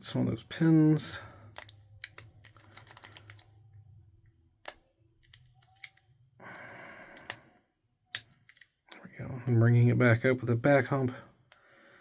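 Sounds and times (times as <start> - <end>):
lock pick clicking in padlock: 1.6 - 3.5, 4.6 - 6.2, 7.2 - 7.4, 8.1 - 8.8.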